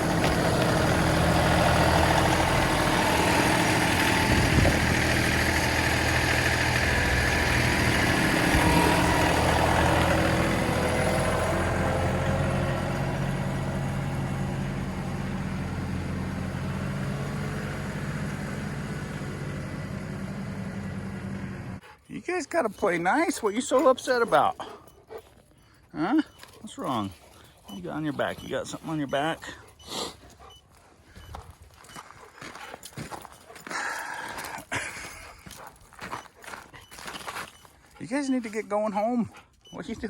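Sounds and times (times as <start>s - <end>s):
tractor diesel engine idling: 0.0s - 24.8s, 27.7s - 30.6s.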